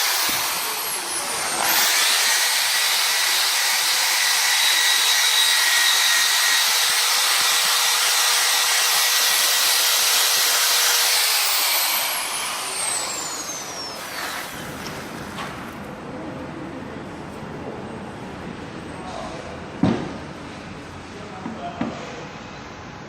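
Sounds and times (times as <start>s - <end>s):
rotary tool running: 0.0s - 15.3s.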